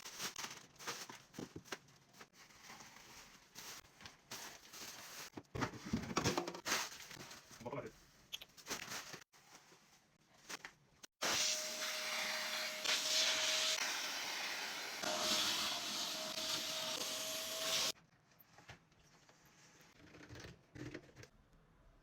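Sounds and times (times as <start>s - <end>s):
small electric motor whining: 11.6s - 18.0s.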